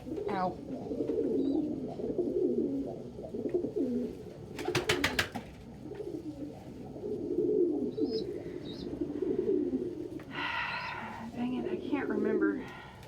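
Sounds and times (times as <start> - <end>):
pigeons cooing: 0.0 - 13.0.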